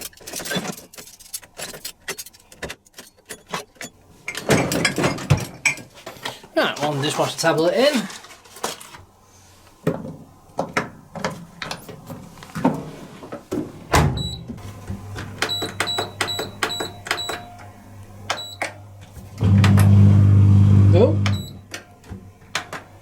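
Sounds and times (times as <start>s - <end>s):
dishwasher low hum: 10.6s - 22.6s
short high control panel beeps: 21.2s - 21.6s.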